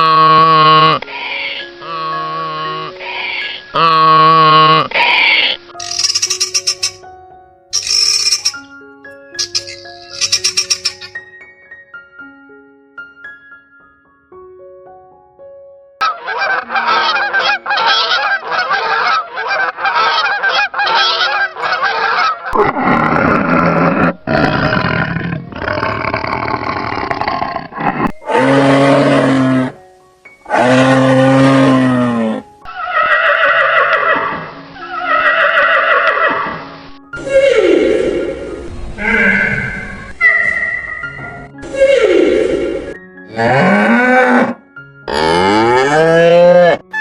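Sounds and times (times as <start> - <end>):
faint piano music: 0.1 - 22.7, 23.4 - 32.8, 33.6 - 47.0
farm animal calls: 16.0 - 22.7, 30.5 - 36.5, 39.0 - 41.4.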